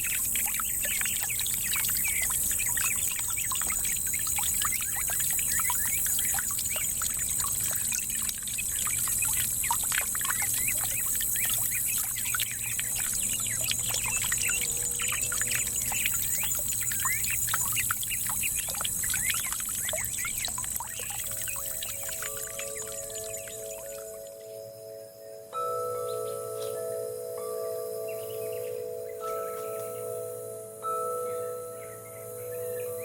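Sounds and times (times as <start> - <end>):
water fountain trickling: 0.0 - 33.0
high-pitched hiss: 21.1 - 33.0.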